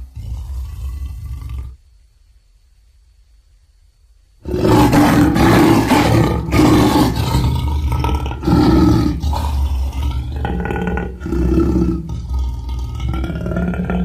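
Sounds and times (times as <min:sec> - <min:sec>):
rough monster roar: 0:04.4 - 0:14.0.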